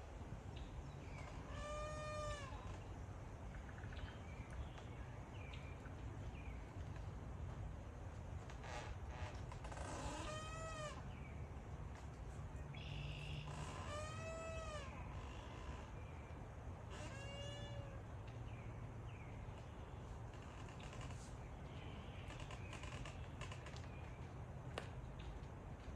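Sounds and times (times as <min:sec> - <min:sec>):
animal calling: 0:12.8 - 0:15.8.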